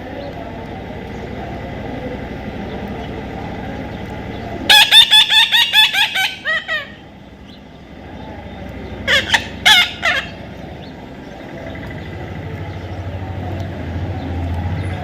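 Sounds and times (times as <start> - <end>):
low background murmur: 0.0 - 15.0
parrot shrill calls: 4.7 - 7.0, 9.1 - 10.4.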